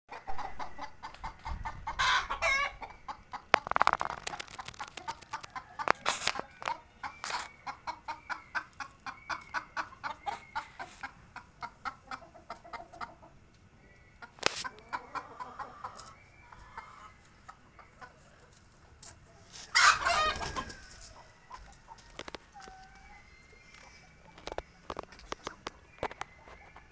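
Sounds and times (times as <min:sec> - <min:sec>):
hens clucking: 0:00.1 - 0:26.9
loud harsh hen call: 0:01.9 - 0:02.8, 0:19.7 - 0:21.0.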